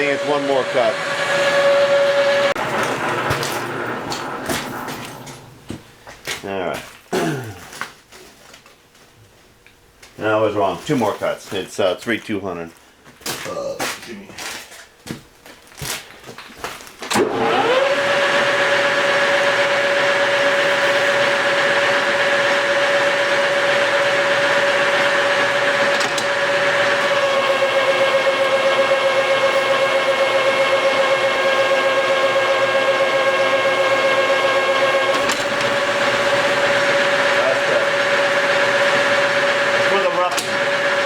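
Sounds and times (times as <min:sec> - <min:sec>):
lathe cutting shaft: 0:00.0 - 0:05.8, 0:17.2 - 0:41.0
lathe whining: 0:00.0 - 0:06.0, 0:17.2 - 0:41.0.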